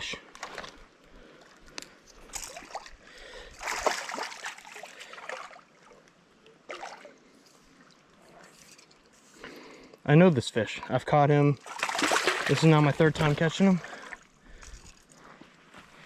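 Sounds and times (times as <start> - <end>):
creek water splashing: 2.2 - 9.7, 10.3 - 14.8.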